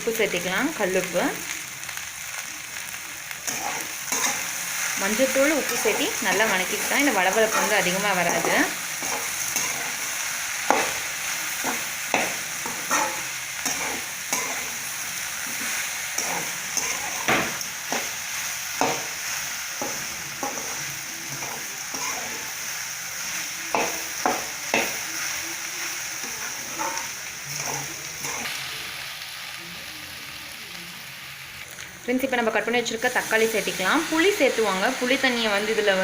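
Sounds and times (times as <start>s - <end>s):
vegetables sizzling in hot oil: 0.0s - 36.0s
utensil scraping against pan: 3.5s - 10.1s, 11.6s - 14.8s, 15.5s - 18.1s, 19.8s - 22.5s, 26.2s - 28.5s.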